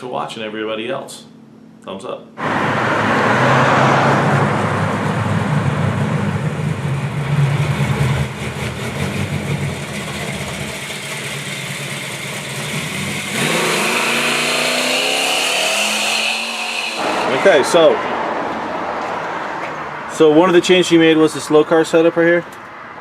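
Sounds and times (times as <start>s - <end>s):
car engine exhaust rumbling: 2.4s - 15.7s.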